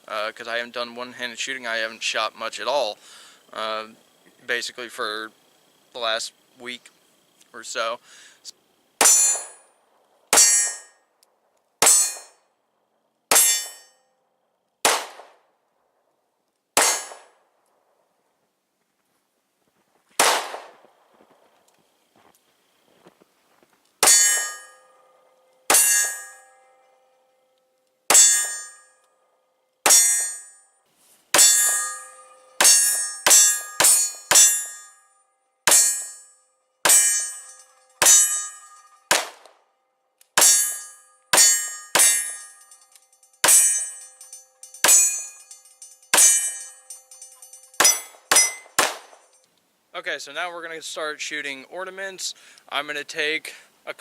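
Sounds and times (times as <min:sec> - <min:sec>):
steel plate clanging: 0:09.0 - 0:09.7, 0:10.3 - 0:11.0, 0:11.8 - 0:12.4, 0:13.3 - 0:14.0, 0:16.8 - 0:17.3, 0:24.0 - 0:27.0, 0:28.1 - 0:29.0, 0:29.9 - 0:30.6, 0:31.3 - 0:35.1, 0:35.7 - 0:39.4, 0:40.4 - 0:49.5
pistol shots: 0:14.8 - 0:15.4, 0:16.8 - 0:17.4, 0:20.2 - 0:20.8, 0:39.1 - 0:39.6, 0:47.8 - 0:49.3.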